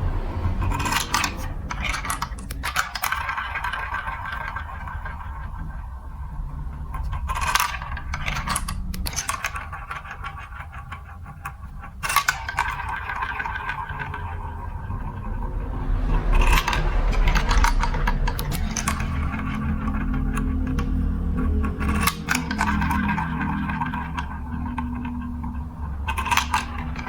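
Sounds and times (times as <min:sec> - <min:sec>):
marbles rolling rumble: 0:00.0 - 0:05.8.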